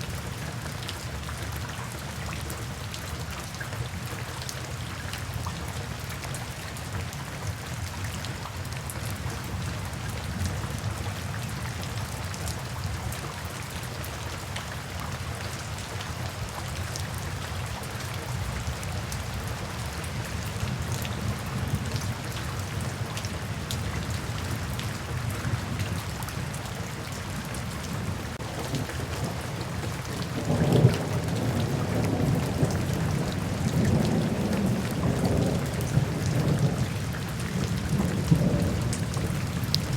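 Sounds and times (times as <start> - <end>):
rain falling: 0.0 - 39.9
thunder rumbling: 28.0 - 39.9.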